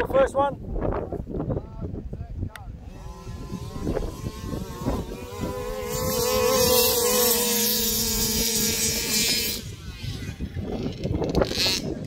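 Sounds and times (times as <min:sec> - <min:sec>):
small two-stroke engine running: 0:02.8 - 0:12.0.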